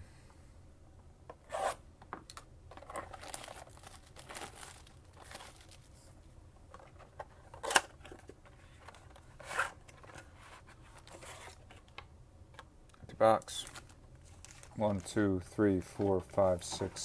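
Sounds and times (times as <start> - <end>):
wrapped packs rustling: 2.8 - 6.1, 13.5 - 17.0.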